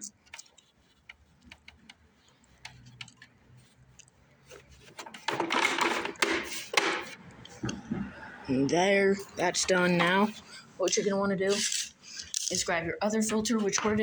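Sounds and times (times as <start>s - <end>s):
filter scraping and rustling: 0.2s - 8.1s.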